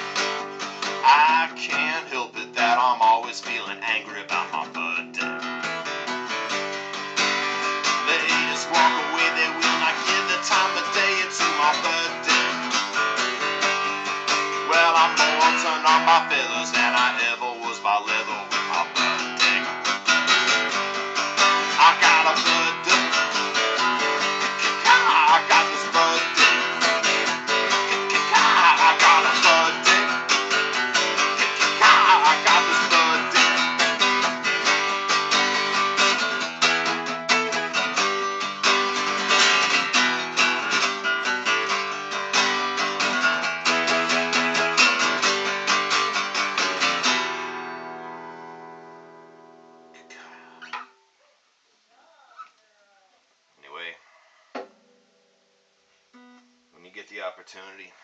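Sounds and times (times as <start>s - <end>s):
acoustic guitar strumming: 0.0s - 51.0s, 54.6s - 57.0s
bent guitar melody notes: 0.0s - 51.1s, 56.1s - 56.8s.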